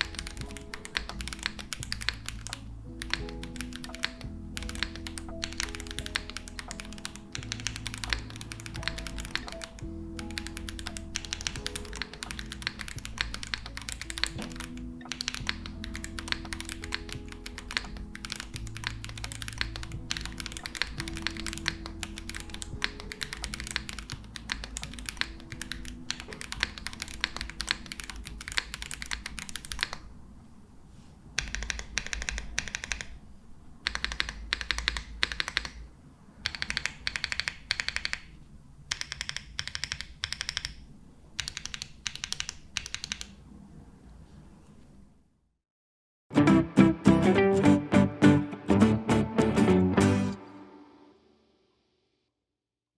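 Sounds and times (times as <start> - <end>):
background music: 0.0 - 29.0, 46.3 - 51.7
mechanical keyboard key clacks: 0.0 - 30.0, 31.4 - 33.2, 33.8 - 35.8, 36.4 - 38.3, 38.9 - 40.8, 41.4 - 43.4.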